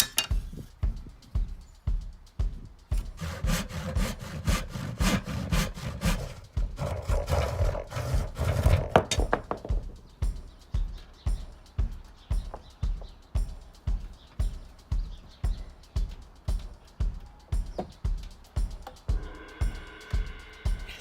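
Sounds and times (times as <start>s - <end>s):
background music with steady beat: 0.0s - 21.0s
hand saw cutting timber: 3.0s - 9.7s
sharp knocks: 3.0s - 10.0s.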